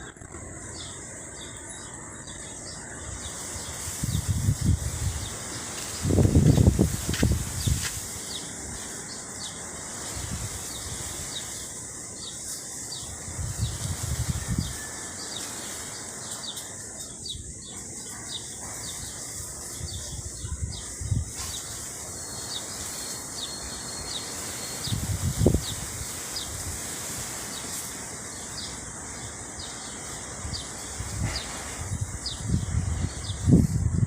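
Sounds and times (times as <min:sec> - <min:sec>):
birds chirping: 0:00.0 - 0:34.0
wind gusts buffeting microphone: 0:02.8 - 0:15.4, 0:18.3 - 0:22.0, 0:24.1 - 0:27.6, 0:28.2 - 0:34.0.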